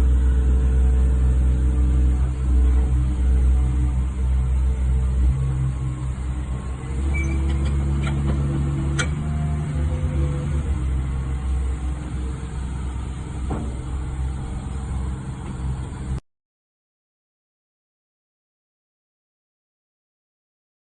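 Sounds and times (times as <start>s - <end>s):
diesel engine running: 0.0s - 16.2s.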